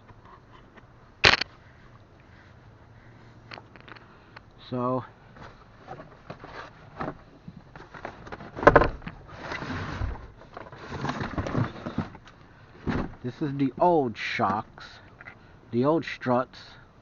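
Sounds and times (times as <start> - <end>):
metal parts knocking and scraping: 1.2 - 1.6, 3.5 - 4.1.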